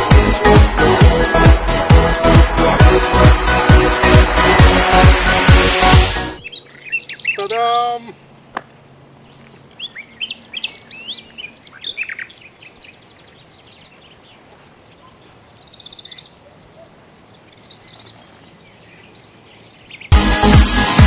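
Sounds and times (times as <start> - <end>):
songbirds chirping: 6.3 - 20.2
low outdoor hiss: 6.4 - 20.1.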